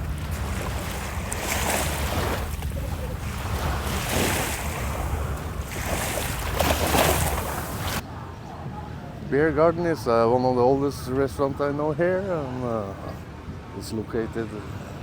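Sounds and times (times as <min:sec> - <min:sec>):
sea waves washing onto beach: 0:00.0 - 0:08.0
wind rumbling on microphone: 0:00.0 - 0:08.0.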